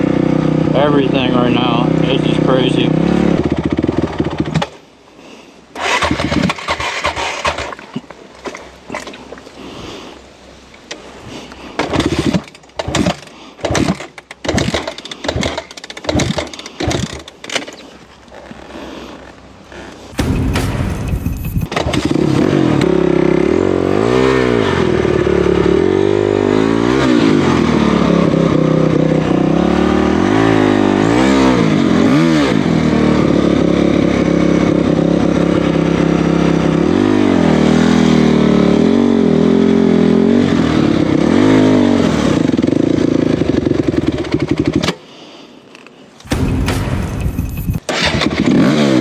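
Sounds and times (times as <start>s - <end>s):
off-road vehicle engine revving: 0.0s - 4.6s, 5.8s - 7.7s, 21.0s - 44.8s, 46.3s - 49.0s.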